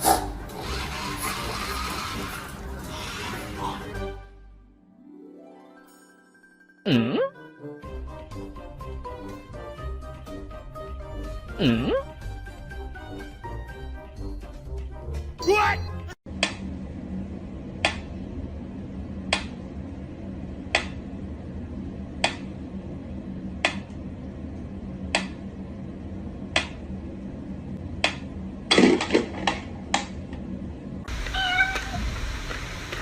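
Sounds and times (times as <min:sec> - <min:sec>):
steady low hum: 0:16.3 - 0:31.4.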